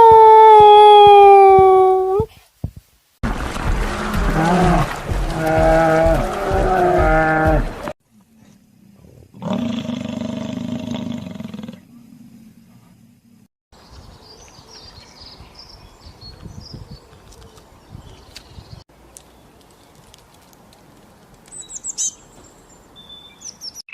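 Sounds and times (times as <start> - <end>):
lion roaring: 3.7 - 7.9, 9.1 - 12.0
birds chirping faintly: 13.8 - 23.9.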